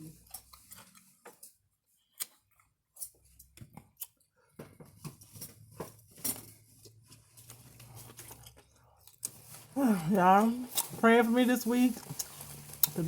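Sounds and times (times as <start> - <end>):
crisp chewing crunches: 6.8 - 9.8, 11.9 - 13.0.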